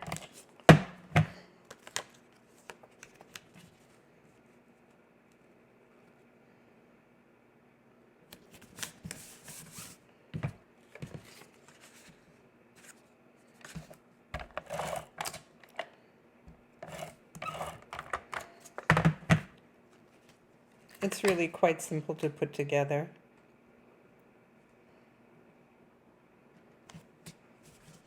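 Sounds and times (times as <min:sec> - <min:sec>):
paper rubbing and rustling: 0:08.5 - 0:10.0, 0:11.0 - 0:13.0.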